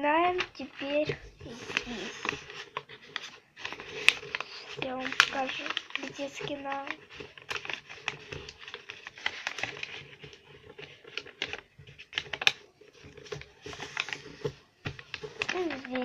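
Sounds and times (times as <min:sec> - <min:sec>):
paper being folded and creased: 0:00.0 - 0:16.0.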